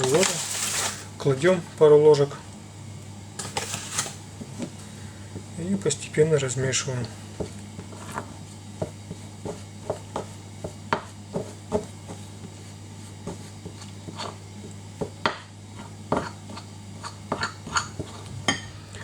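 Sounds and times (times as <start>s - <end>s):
steady low hum: 0.0s - 19.0s
spoon stirring in a bowl: 7.0s - 18.8s.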